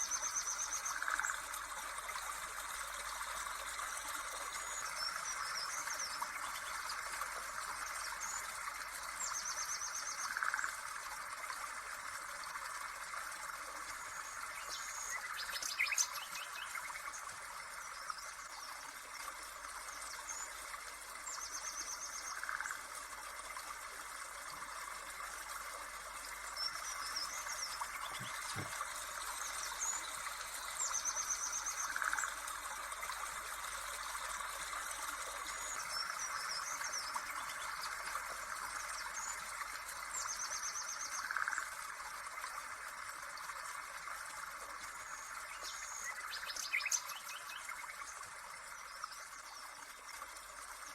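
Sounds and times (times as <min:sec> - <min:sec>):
trickling water: 0:00.0 - 0:50.9.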